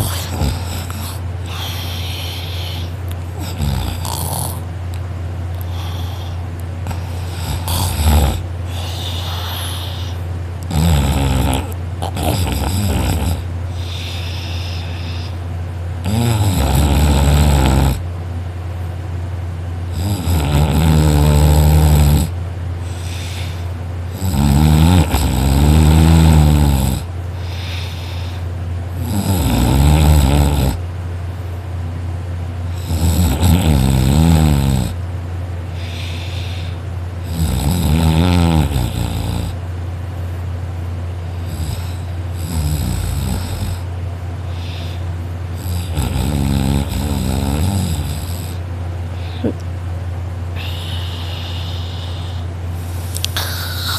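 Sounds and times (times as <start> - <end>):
person snoring loudly: 0.0 - 4.7, 5.6 - 15.4, 16.0 - 18.0, 19.9 - 28.4, 29.0 - 30.8, 32.7 - 35.0, 35.8 - 39.6, 41.4 - 43.9, 44.5 - 48.6, 50.6 - 53.9
steady low hum: 0.0 - 53.9.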